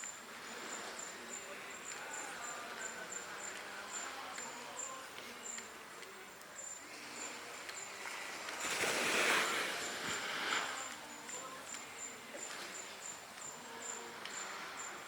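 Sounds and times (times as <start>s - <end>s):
faint whistled calls: 0.0s - 5.7s, 6.5s - 15.0s
insects chirping: 0.0s - 15.0s
loud hiss: 8.6s - 11.0s.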